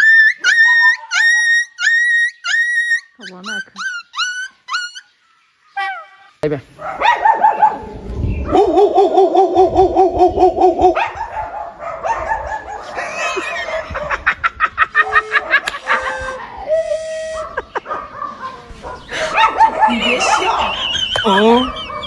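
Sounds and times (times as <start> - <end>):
person clucking calls: 0.0 - 5.0, 15.0 - 17.9, 19.1 - 22.0
mouth clicks: 15.5 - 17.6, 19.1 - 21.8
person whistling tones: 15.7 - 17.5.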